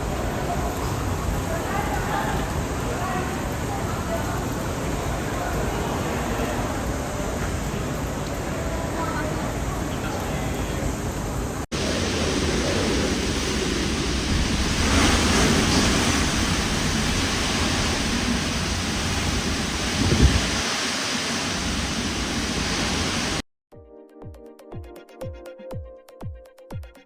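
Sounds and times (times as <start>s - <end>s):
driving rain: 0.0s - 23.4s
typhoon wind: 0.0s - 23.4s
wind buffeting microphone: 13.5s - 20.8s.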